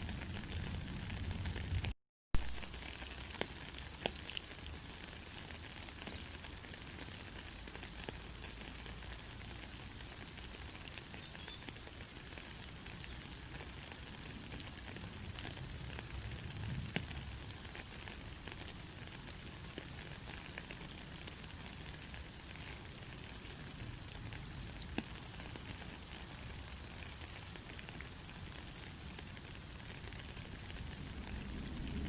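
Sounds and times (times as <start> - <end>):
faint crackles: 0.0 - 32.0.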